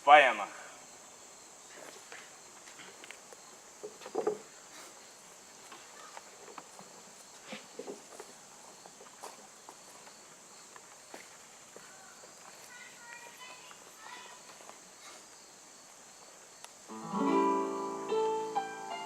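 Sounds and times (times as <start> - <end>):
steady hiss: 0.0 - 19.0
small knocks and shuffles: 5.6 - 15.2.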